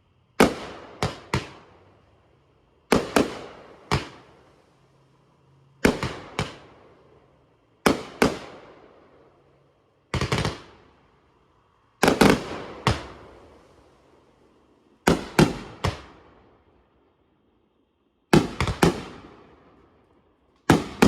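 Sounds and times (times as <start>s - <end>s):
fireworks banging: 0.4s - 2.0s, 2.9s - 4.5s, 5.8s - 7.0s, 7.9s - 8.9s, 10.1s - 10.8s, 12.0s - 13.7s, 15.1s - 16.3s, 18.4s - 19.5s, 20.7s - 21.0s.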